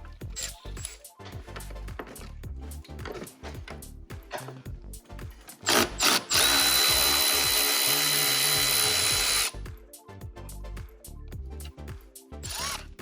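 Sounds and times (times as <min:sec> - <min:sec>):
power drill whining: 0:05.6 - 0:09.5.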